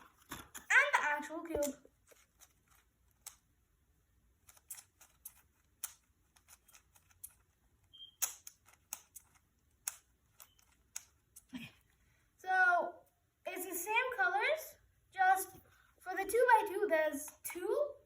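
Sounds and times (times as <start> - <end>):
faint plastic clicks of speed cube: 1.5 - 3.6, 4.3 - 11.6.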